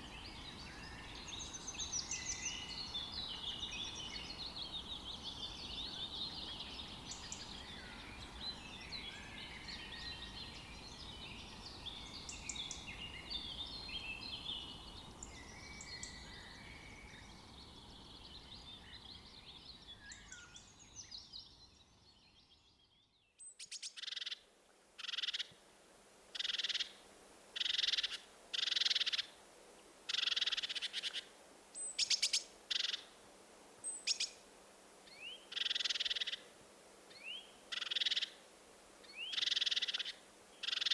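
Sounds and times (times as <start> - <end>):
background hiss: 0.0 - 40.9
chorus of small birds chirping: 31.8 - 33.1, 33.8 - 34.4.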